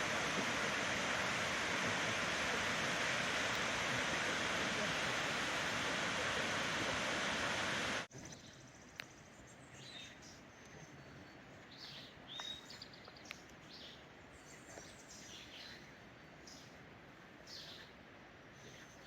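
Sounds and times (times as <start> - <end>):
waterfall rushing: 0.0 - 8.1
faint clicks: 0.2 - 4.6.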